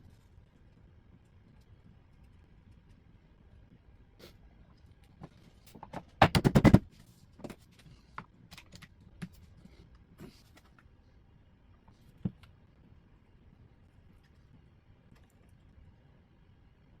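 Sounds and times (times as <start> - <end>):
rapid sharp knocks: 6.2 - 6.8.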